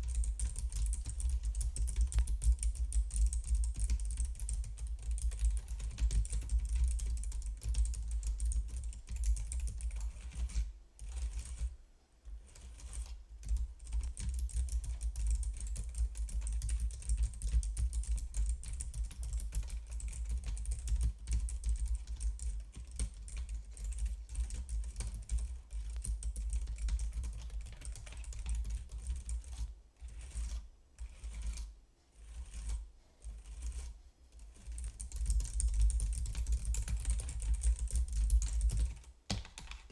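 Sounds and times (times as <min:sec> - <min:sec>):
typing on a keyboard: 0:00.0 - 0:11.7, 0:12.4 - 0:31.7, 0:34.5 - 0:39.9.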